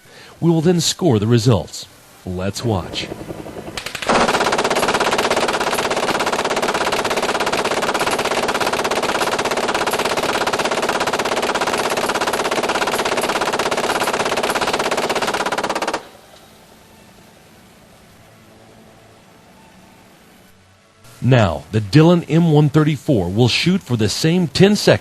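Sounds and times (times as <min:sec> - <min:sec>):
machine gun firing burst: 0:02.8 - 0:16.1.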